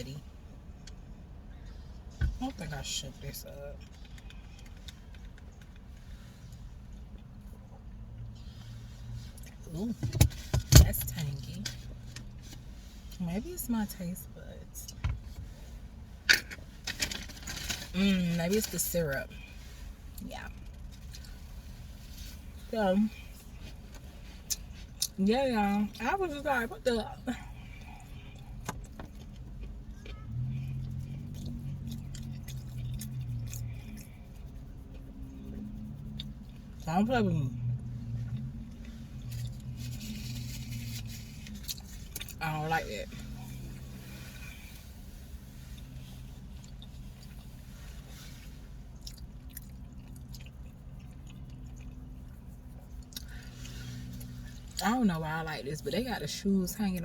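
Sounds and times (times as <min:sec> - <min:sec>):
car engine humming: 0:00.0 - 0:57.0
soft chewing: 0:27.4 - 0:36.8, 0:37.7 - 0:42.4, 0:43.2 - 0:54.8.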